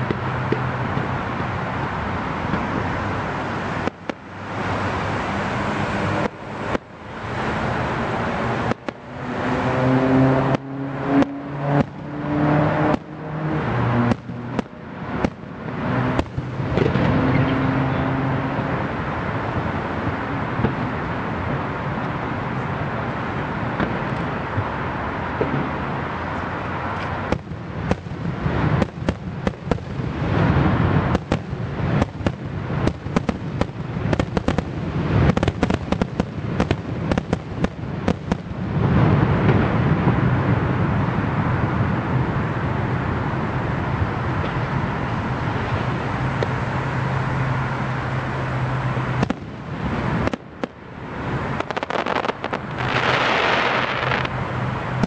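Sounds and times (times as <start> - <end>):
fireworks cracks and bangs: 0.0 - 5.0, 6.0 - 9.5, 10.4 - 17.5, 19.5 - 22.1, 23.6 - 24.7, 26.4 - 40.3, 49.1 - 55.0.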